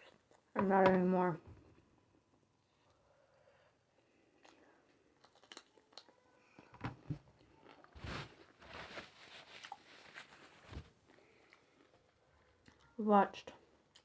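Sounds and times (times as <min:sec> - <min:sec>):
chewing and biting: 0:05.2 - 0:06.2.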